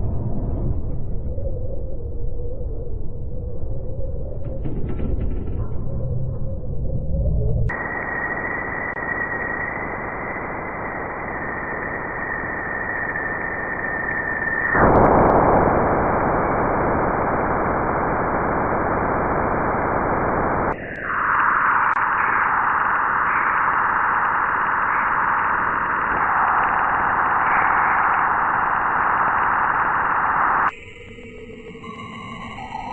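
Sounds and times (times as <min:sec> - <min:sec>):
hissing static: 0:07.7 - 0:30.7.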